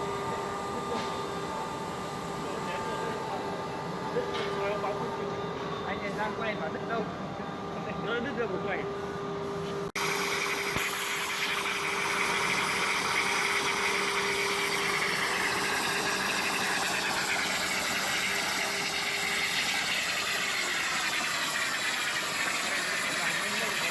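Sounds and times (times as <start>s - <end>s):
plasma torch hissing: 10.0s - 23.9s.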